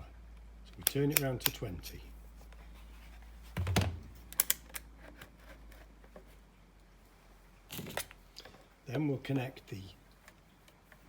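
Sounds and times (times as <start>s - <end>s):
multimeter dial clicking: 0.8s - 1.6s
soft thump: 3.6s - 4.1s.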